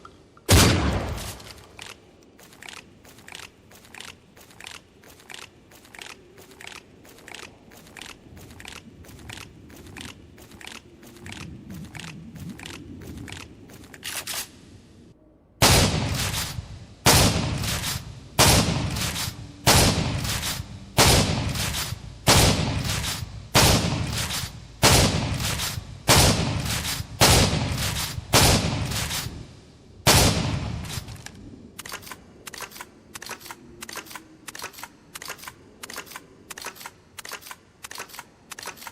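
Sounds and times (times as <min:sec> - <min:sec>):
heavy echoing gunshots: 0:00.5 - 0:01.6, 0:15.6 - 0:31.2.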